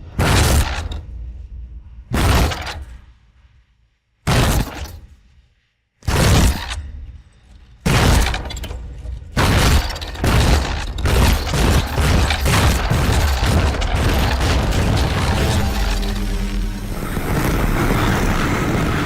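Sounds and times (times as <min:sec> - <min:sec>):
debris tumbling and breaking: 0:07.9 - 0:17.8
heavy crash: 0:09.4 - 0:19.0.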